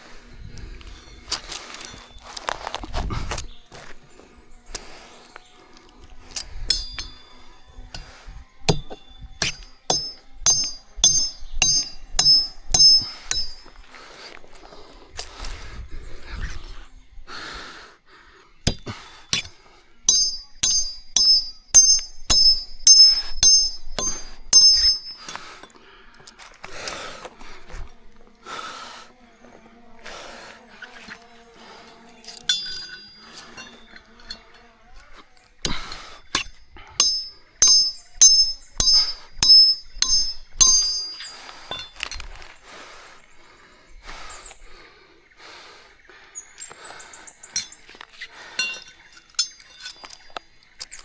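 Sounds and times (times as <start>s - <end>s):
metal clinks with high ring: 4.7s - 13.9s, 18.7s - 25.8s, 32.0s - 42.5s, 46.5s - 51.0s.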